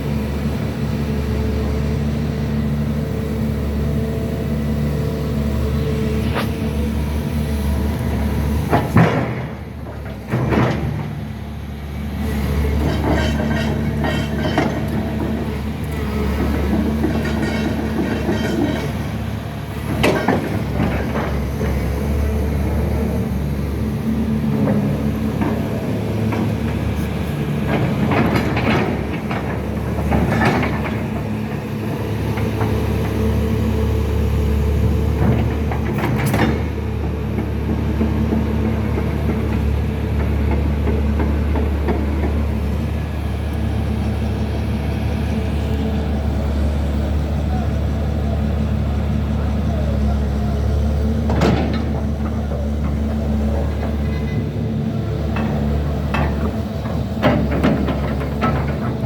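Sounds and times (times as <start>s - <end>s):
excavator diesel engine running: 0.0s - 59.0s
metallic clanking and rattling: 12.7s - 15.6s, 16.3s - 19.2s.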